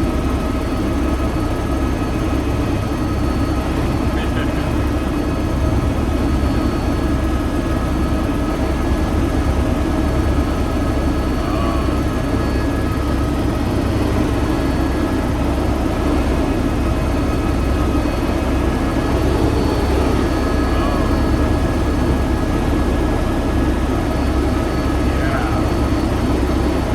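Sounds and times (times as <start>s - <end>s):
faint steady whine: 0.0s - 26.9s
helicopter engine and rotor drone: 0.0s - 26.9s.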